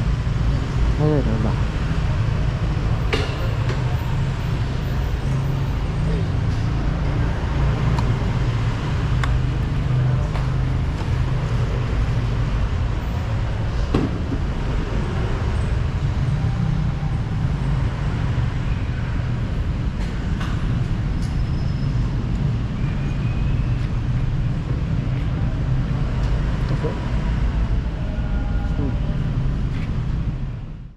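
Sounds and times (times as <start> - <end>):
road and vehicle noise: 0.0 - 30.9
scooter engine humming: 6.7 - 12.1.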